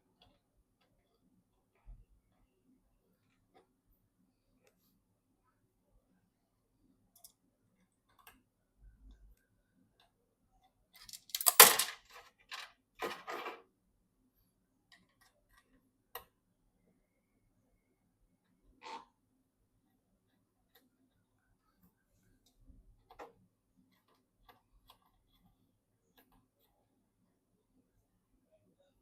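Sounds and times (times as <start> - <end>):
rustling and scraping: 11.0 - 13.6.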